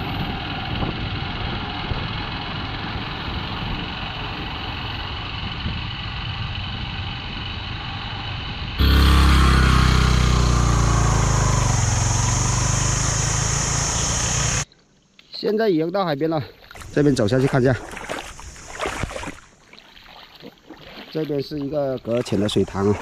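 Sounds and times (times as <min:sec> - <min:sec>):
vehicle running noise: 0:00.0 - 0:14.6
deep rumble: 0:03.2 - 0:14.6.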